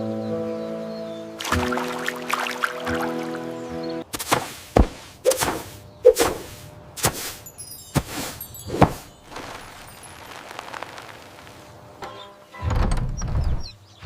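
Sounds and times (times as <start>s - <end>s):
music with held notes: 0.0s - 4.0s
sharp thuds and swishes: 4.1s - 9.9s.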